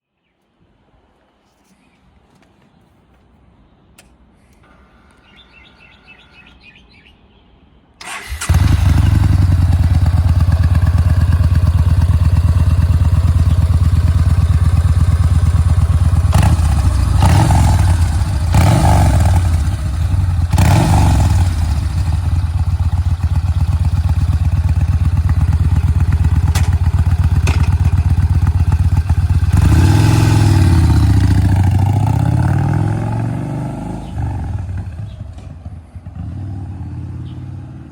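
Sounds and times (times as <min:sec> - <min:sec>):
motorcycle engine revving: 0:08.0 - 0:37.9
motorcycle engine starting and idling: 0:08.0 - 0:37.9.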